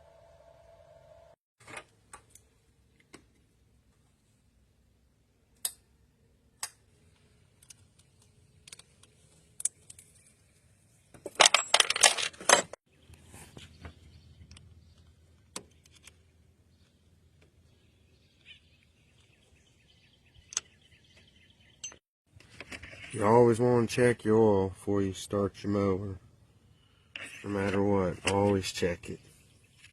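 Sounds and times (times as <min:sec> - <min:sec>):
metal objects clicking and clinking: 0:11.2 - 0:12.8.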